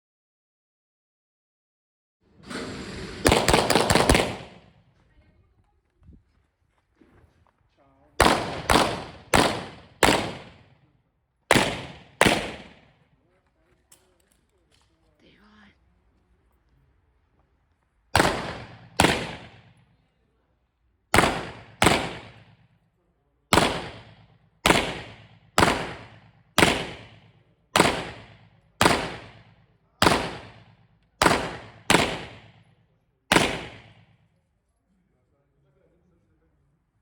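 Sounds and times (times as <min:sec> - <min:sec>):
gunshots with ringing echo: 0:02.4 - 0:04.9, 0:08.2 - 0:10.8, 0:11.5 - 0:13.0, 0:18.1 - 0:19.9, 0:21.1 - 0:22.7, 0:23.5 - 0:32.7, 0:33.3 - 0:34.2.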